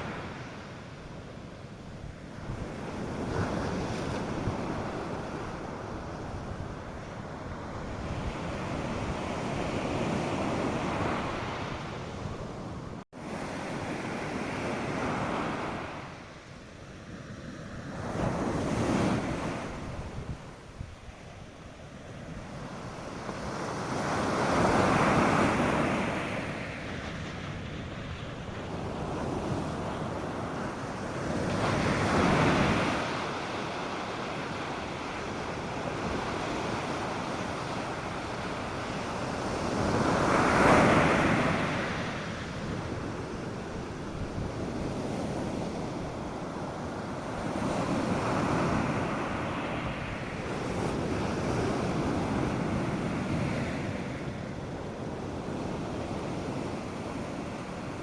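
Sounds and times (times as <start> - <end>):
wind rumbling on microphone: 0.0 - 58.0
surf breaking on sandy beach: 17.1 - 58.0.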